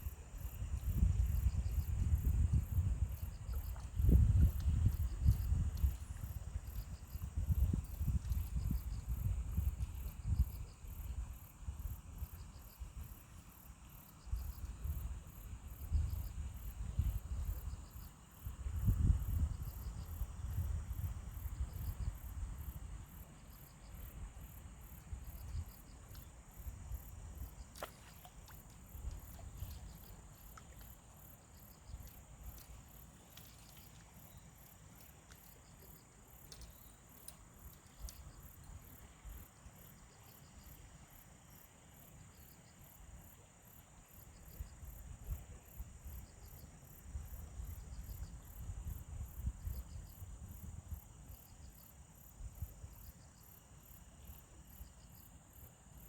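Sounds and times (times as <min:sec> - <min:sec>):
wind rumble on microphone: 0:00.0 - 0:13.1, 0:14.2 - 0:23.0, 0:44.4 - 0:51.4
insects chirping: 0:00.0 - 0:56.0.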